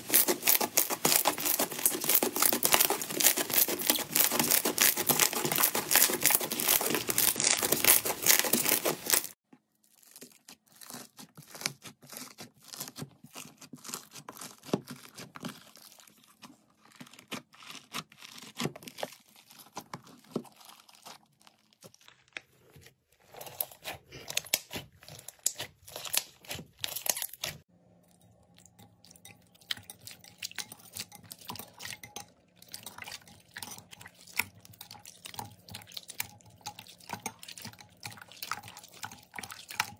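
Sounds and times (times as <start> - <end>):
slime squished by hand: 0.0 - 22.4.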